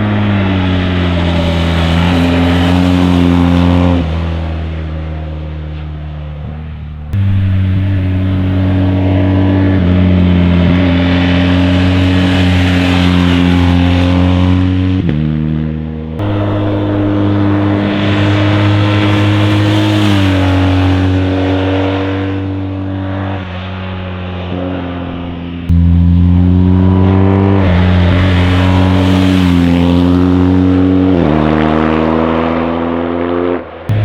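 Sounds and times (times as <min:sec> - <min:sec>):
motorcycle engine running: 0:07.2 - 0:14.2, 0:16.2 - 0:22.0, 0:25.7 - 0:30.2.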